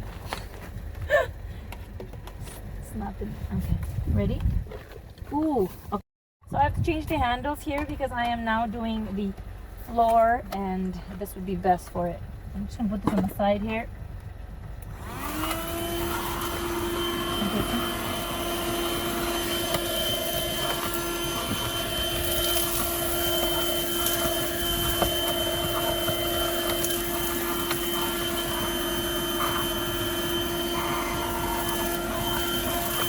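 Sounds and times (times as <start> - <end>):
handheld vacuum motor whine: 14.8 - 33.0.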